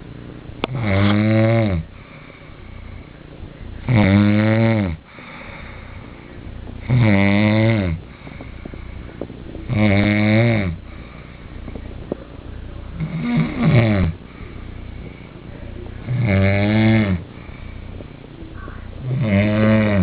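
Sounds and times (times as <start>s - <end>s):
man snoring: 0.6s - 2.1s, 3.8s - 5.9s, 6.8s - 8.7s, 9.6s - 11.2s, 12.9s - 14.2s, 16.0s - 17.8s, 19.0s - 20.0s
quiet breathing: 0.6s - 20.0s.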